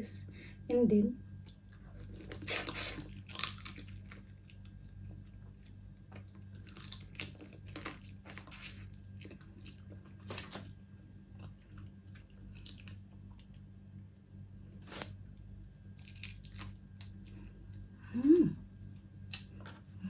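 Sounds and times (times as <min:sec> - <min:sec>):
low hum: 0:00.0 - 0:20.0
chewing and crunching: 0:01.4 - 0:13.7, 0:14.6 - 0:17.9.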